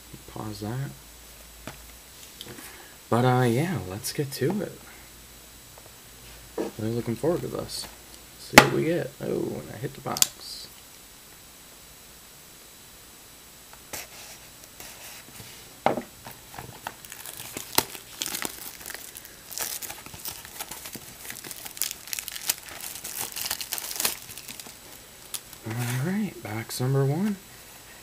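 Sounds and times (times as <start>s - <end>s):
plastic wrapping crinkling and tearing: 16.2s - 26.1s.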